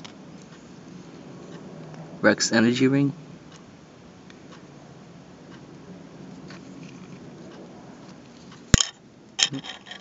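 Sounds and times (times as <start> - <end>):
small clinks: 8.8 - 10.0.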